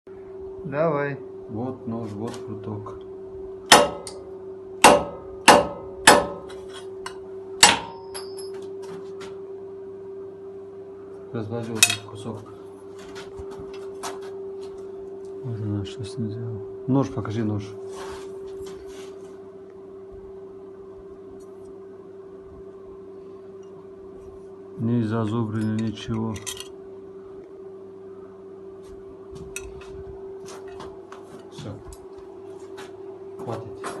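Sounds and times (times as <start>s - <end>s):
steady low hum: 0.1s - 34.0s
knife blade striking hard object: 3.7s - 4.2s
rubs or scrapes: 17.8s - 19.4s.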